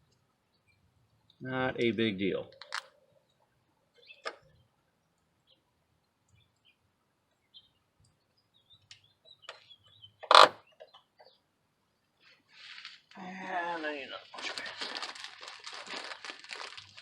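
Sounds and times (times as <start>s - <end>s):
faint bird chirps: 3.0s - 4.8s, 5.4s - 12.5s.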